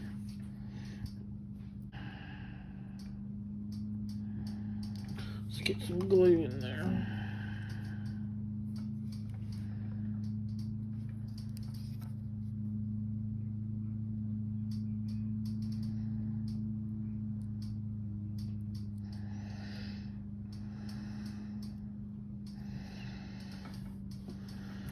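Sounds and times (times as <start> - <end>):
low electrical hum: 0.0 - 24.9
small clicks and taps of handling: 7.7 - 12.2.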